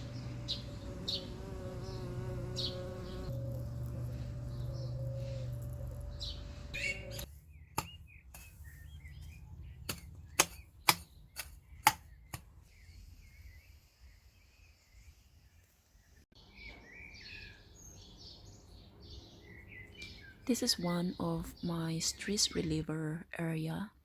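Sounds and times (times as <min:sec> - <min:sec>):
insect buzz: 0:00.0 - 0:07.3
small birds chirping: 0:00.0 - 0:23.9.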